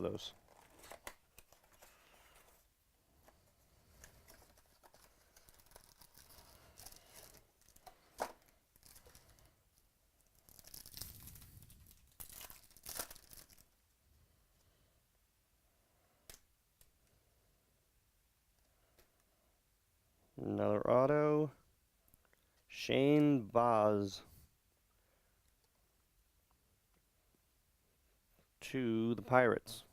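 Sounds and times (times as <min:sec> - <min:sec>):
card pack wrappers tearing and crinkling: 0:00.4 - 0:02.6, 0:03.9 - 0:09.4, 0:10.3 - 0:13.8.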